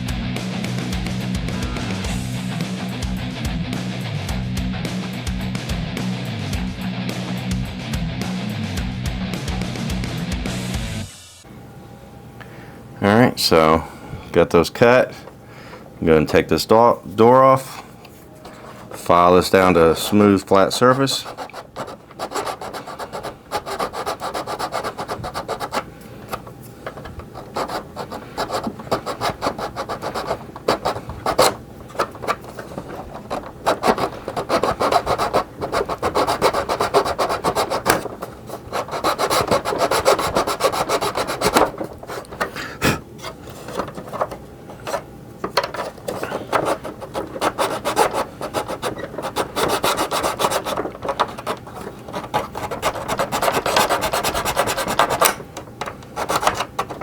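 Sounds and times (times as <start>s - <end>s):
hand file rasping on plastic: 18.5s - 55.4s, 56.1s - 57.0s.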